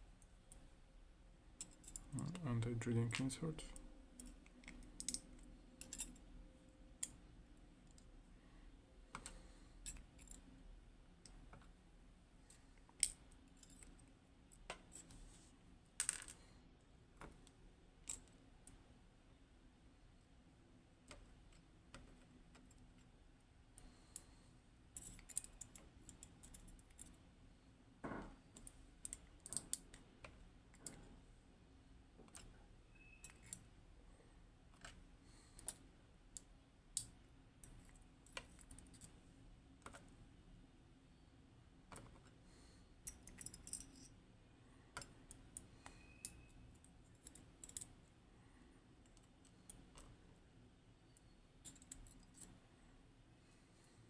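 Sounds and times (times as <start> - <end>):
metal lock parts clicking: 4.2 - 6.2, 25.0 - 27.2, 28.6 - 31.1, 32.3 - 33.7, 43.1 - 44.1, 47.1 - 47.9, 51.6 - 52.5.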